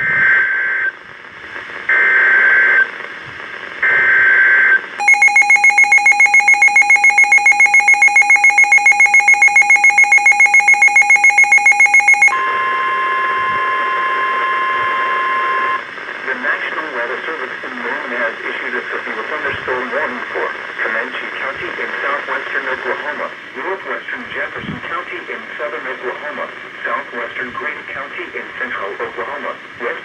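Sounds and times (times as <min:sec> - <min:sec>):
rapid alarm beeps: 0:05.0 - 0:12.4
data header tones: 0:05.0 - 0:15.8
steady warning alarm tone: 0:05.0 - 0:15.8.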